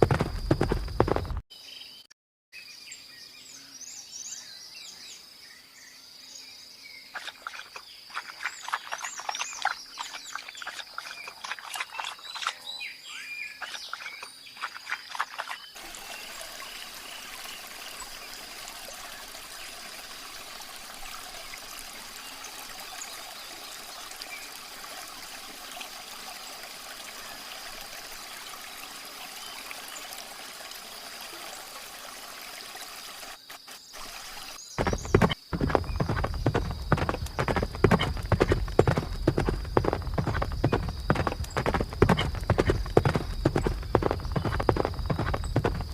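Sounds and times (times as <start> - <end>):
running water rushing: 7.2 - 12.6, 13.5 - 45.9.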